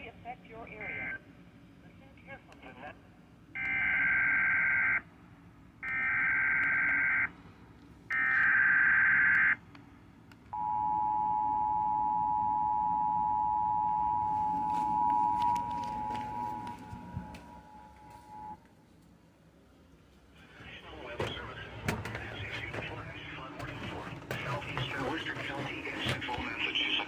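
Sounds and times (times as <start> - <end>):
two-tone attention signal: 10.6 - 18.6.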